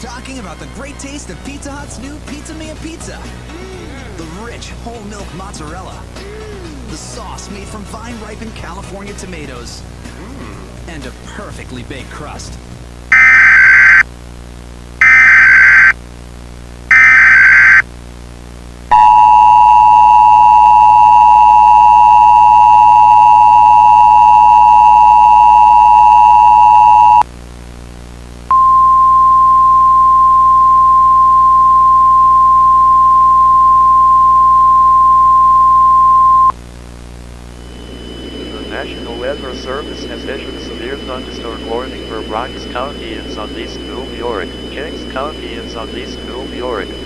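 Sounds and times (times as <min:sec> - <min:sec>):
buzzing data bursts: 0:13.1 - 0:14.0, 0:15.0 - 0:15.9, 0:16.9 - 0:17.8, 0:37.5 - 0:47.0
steady alert tone: 0:13.1 - 0:14.0, 0:15.0 - 0:15.9
two-tone attention signal: 0:13.1 - 0:14.0, 0:15.0 - 0:15.9, 0:16.9 - 0:17.8, 0:18.9 - 0:27.2, 0:28.5 - 0:36.5.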